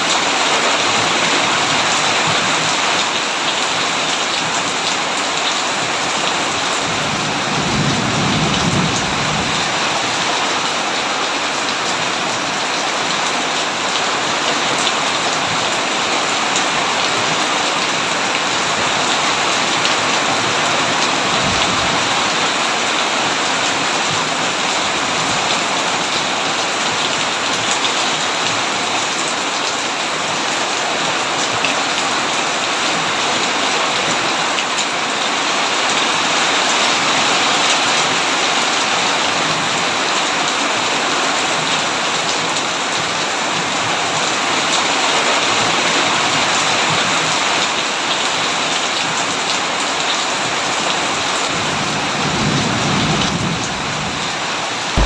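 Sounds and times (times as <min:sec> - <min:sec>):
heavy rainfall: 0:00.0 - 0:55.0
thunder rolling: 0:07.0 - 0:09.7.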